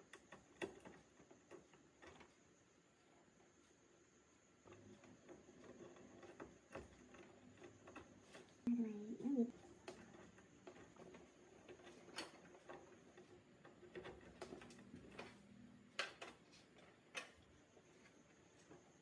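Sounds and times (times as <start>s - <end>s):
small clicks and light taps: 0.0s - 2.4s, 9.5s - 18.9s
quiet room hum: 0.0s - 19.0s.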